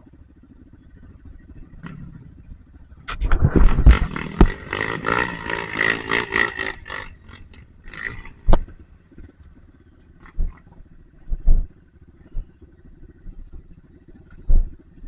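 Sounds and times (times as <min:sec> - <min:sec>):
dirt bike engine revving: 0:00.0 - 0:15.0.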